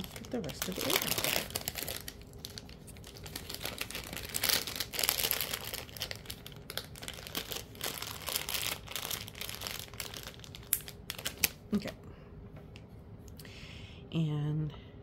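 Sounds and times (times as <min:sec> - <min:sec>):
plastic pouch crinkling: 0:00.0 - 0:11.8.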